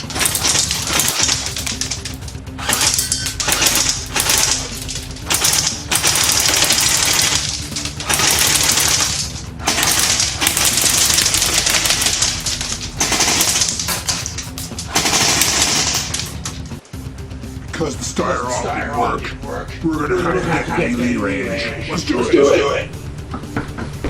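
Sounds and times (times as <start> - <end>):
airsoft rifle full-auto bursts: 0.0 - 16.5
background music: 0.0 - 24.0.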